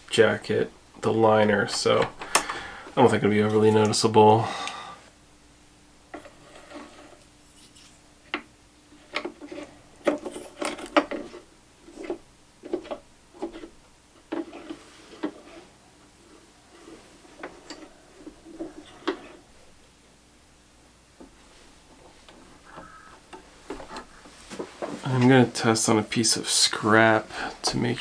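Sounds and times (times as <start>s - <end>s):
faint steady hum: 0.0s - 28.0s
clicks and knocks of small objects: 7.5s - 13.7s.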